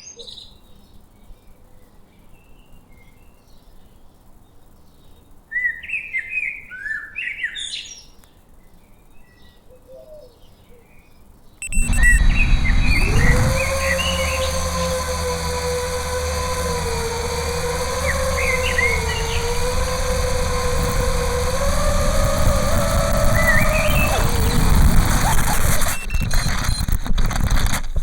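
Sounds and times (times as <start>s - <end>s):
small birds chirping: 11.6s - 26.9s
drone motors whining: 11.6s - 28.0s.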